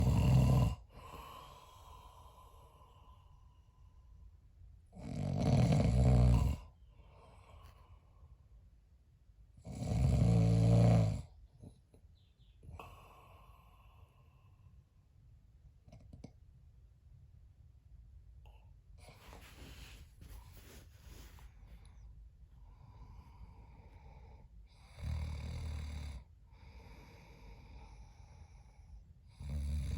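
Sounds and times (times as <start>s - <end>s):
man snoring: 0.0s - 2.4s, 5.0s - 6.7s, 9.6s - 11.3s, 24.8s - 26.2s, 29.3s - 29.9s
quiet breathing: 0.0s - 5.0s, 6.0s - 9.0s, 11.3s - 15.1s, 18.4s - 29.9s.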